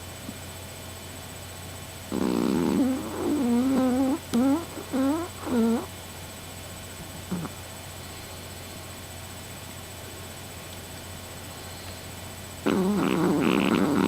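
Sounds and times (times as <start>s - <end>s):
dog snorting: 2.1s - 5.9s, 7.3s - 7.6s, 12.6s - 14.0s
small dog snoring: 2.1s - 5.9s, 7.3s - 7.6s, 12.6s - 14.0s.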